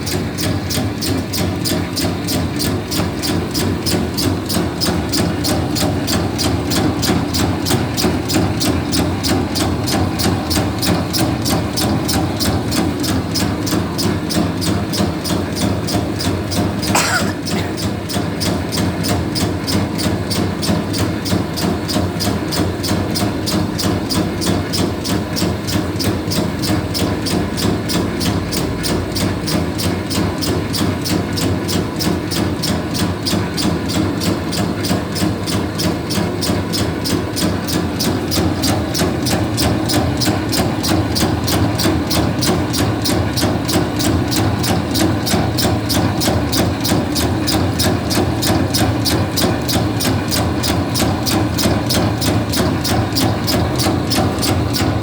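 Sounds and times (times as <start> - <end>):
rhythmic machine clack: 0.0 - 55.0
machine motor hum: 33.6 - 55.0.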